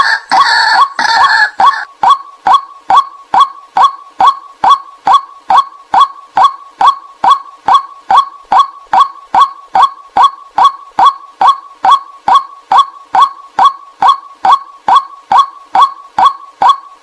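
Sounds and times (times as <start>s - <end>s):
waterhen calls: 0.0s - 2.6s.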